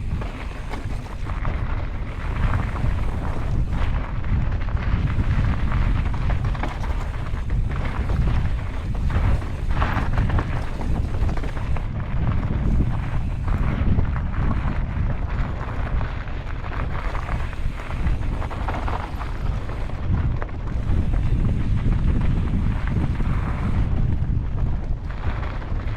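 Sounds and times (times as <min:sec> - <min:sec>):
bike rattling over loose ground: 0:00.0 - 0:25.9
wind buffeting microphone: 0:00.0 - 0:25.9.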